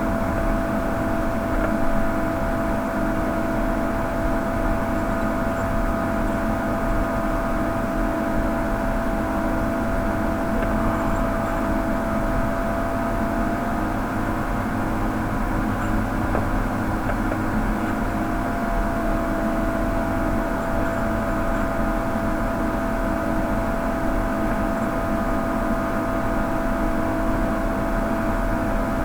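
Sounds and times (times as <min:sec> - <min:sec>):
high hum: 0:09.2 - 0:14.1
mechanical whir: 0:10.2 - 0:12.9.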